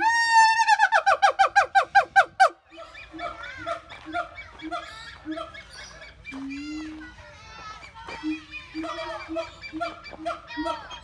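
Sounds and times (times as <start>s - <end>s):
gibbon whooping call: 8.2s - 11.0s.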